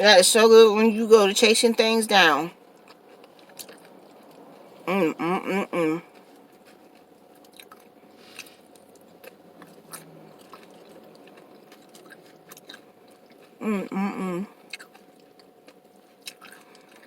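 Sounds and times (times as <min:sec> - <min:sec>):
person chewing crunchy chips: 0:02.6 - 0:17.0
person speaking: 0:04.9 - 0:06.1.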